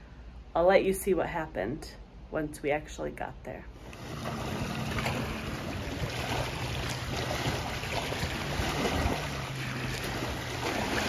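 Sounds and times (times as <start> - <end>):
wind: 0.0 - 11.0
lake water at shore: 3.7 - 11.0.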